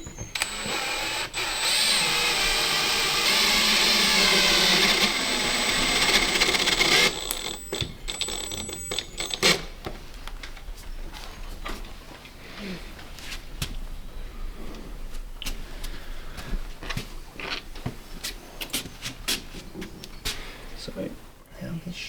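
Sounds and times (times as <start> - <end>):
power tool running: 0.0 - 9.7.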